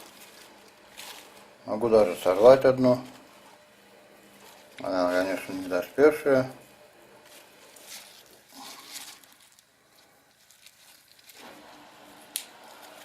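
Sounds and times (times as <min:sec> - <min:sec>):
leaves rustling and crinkling: 0:00.0 - 0:03.4, 0:04.3 - 0:05.9, 0:07.2 - 0:11.5.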